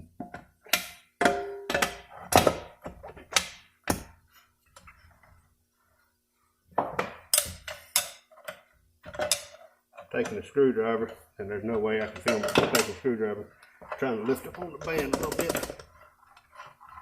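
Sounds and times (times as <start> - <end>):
metal parts clanking: 13.9 - 17.0.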